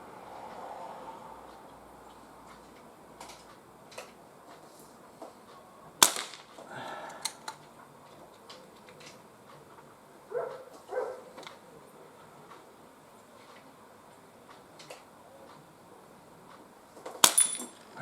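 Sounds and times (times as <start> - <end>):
air pistol shot crack: 6.0 - 6.6
dog barking: 10.3 - 11.4.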